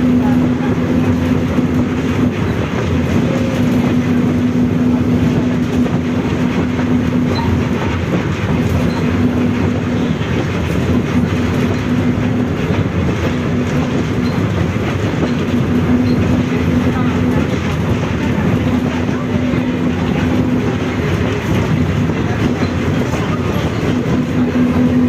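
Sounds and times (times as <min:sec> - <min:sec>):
bus rumbling: 0:00.0 - 0:25.0
differential gear whine: 0:00.0 - 0:25.0.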